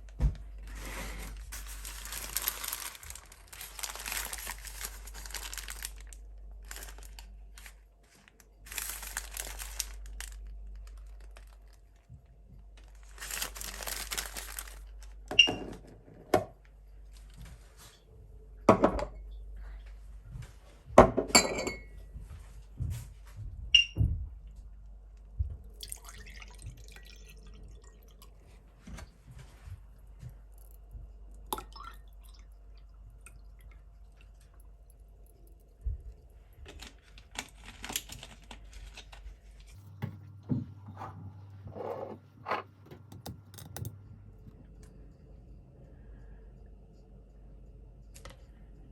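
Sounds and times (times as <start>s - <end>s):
wrapper crinkling: 0.1s - 15.3s, 36.6s - 39.8s.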